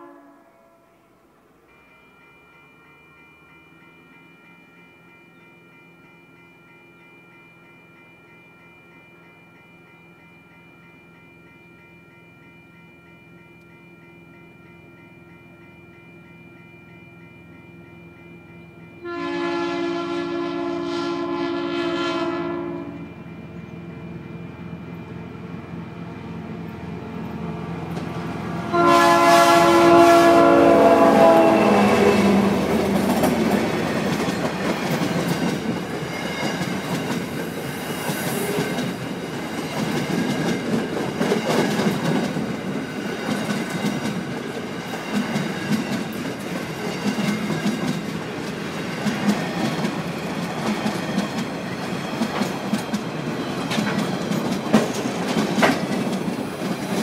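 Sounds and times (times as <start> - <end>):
train horn blast: 0.0 - 1.1, 19.0 - 23.3, 28.6 - 33.2
diesel locomotive rumble: 23.2 - 36.1
train wheels clickety-clack: 27.2 - 28.3, 31.7 - 57.0.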